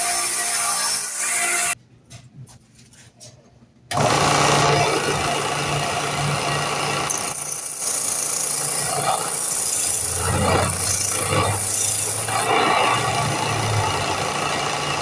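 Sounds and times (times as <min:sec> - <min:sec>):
power sander grinding wood: 0:04.0 - 0:15.0.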